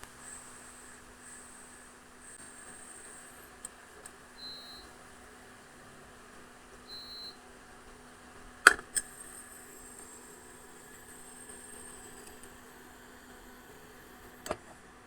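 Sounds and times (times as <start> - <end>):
low steady hum: 0.0 - 14.8
faint high-pitched whine: 0.0 - 15.0
short electronic beep: 4.4 - 4.9, 6.9 - 7.4.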